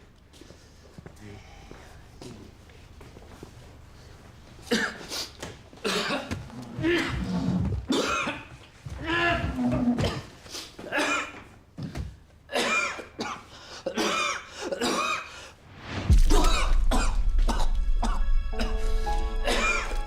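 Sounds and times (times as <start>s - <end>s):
man coughing: 4.7s - 5.1s, 5.8s - 7.2s, 7.9s - 8.5s, 10.0s - 11.5s, 12.5s - 15.4s, 16.2s - 20.0s
dramatic background music: 16.1s - 20.0s.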